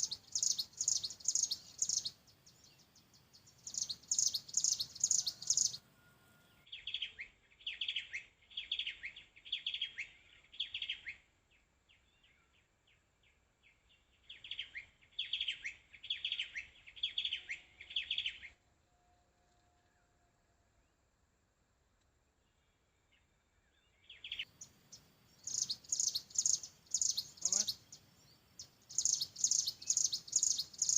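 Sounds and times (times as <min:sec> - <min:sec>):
small bird chirping: 0:00.0 - 0:05.8, 0:06.5 - 0:11.3, 0:13.6 - 0:18.6, 0:23.1 - 0:30.9.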